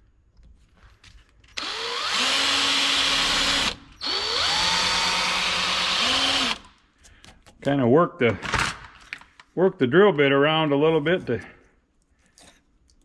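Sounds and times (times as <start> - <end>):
electric drill drilling rivets: 1.4 - 6.8.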